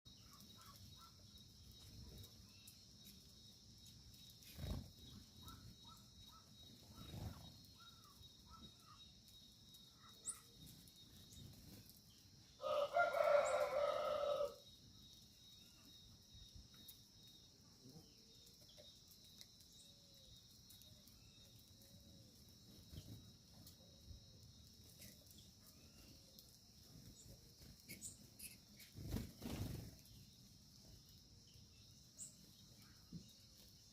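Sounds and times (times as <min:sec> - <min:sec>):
faint bird chirps: 0:04.1 - 0:33.9
rooster crowing: 0:12.6 - 0:14.6.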